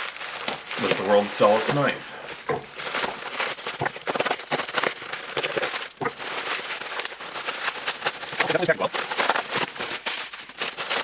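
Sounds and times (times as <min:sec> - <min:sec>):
packaging crackling and crinkling: 0:00.0 - 0:11.0.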